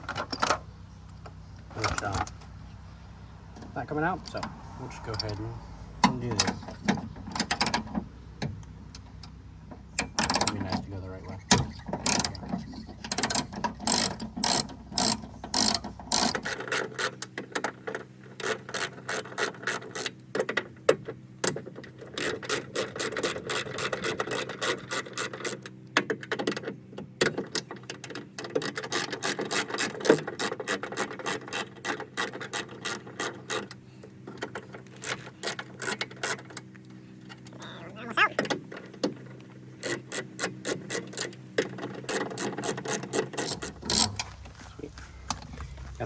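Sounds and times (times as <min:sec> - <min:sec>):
ratchet wrench clicking: 0:13.1 - 0:17.3, 0:18.4 - 0:20.2, 0:22.1 - 0:25.7, 0:27.5 - 0:33.8, 0:34.4 - 0:36.6, 0:39.8 - 0:44.1.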